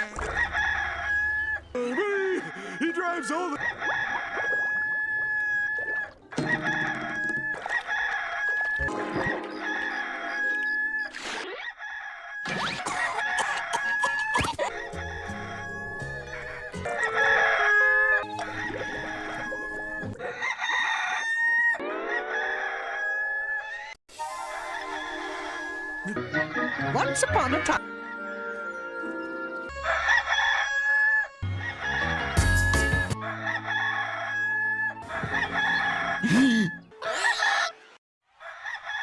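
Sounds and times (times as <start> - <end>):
rooster crowing: 0.2 - 1.7, 2.3 - 8.8, 13.1 - 19.5, 20.2 - 26.9, 29.7 - 36.4, 38.4 - 39.0.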